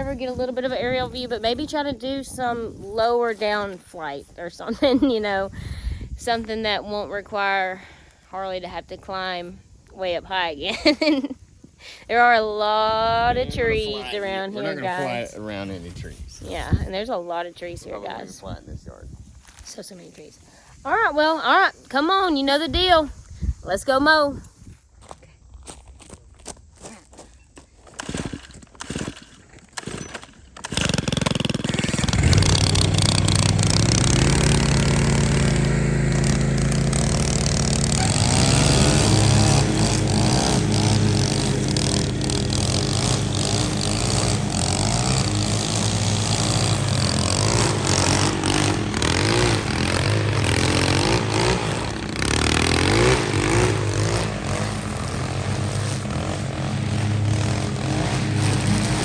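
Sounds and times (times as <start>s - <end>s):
lawn mower engine running: 0.0s - 9.4s, 28.0s - 59.0s.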